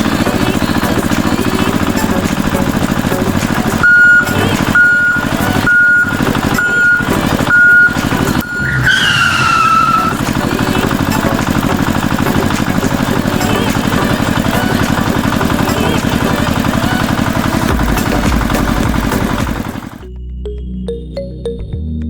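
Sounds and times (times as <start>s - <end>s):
small tractor engine chugging: 0.0s - 20.0s
reversing beeps: 2.1s - 10.2s
high tone falling in pitch: 2.4s - 10.5s.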